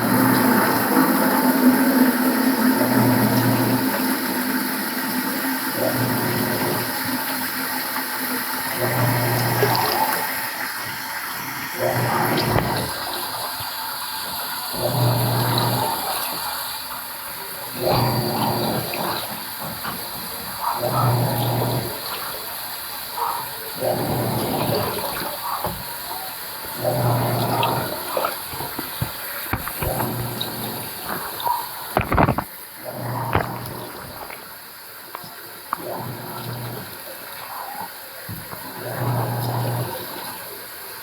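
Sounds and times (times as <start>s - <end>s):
washing machine motor humming: 0.0s - 41.0s
water sloshing: 11.8s - 13.2s, 17.9s - 34.6s.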